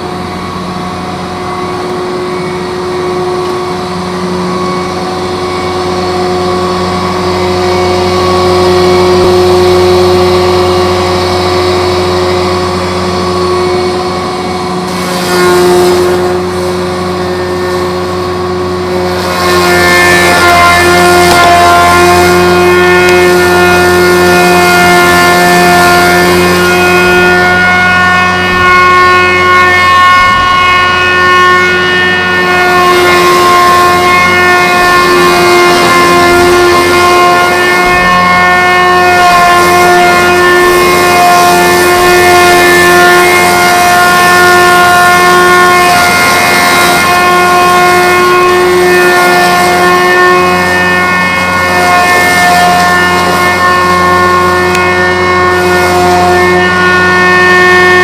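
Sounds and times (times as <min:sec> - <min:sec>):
log-rounding machine whine: 0:00.0 - 0:58.0.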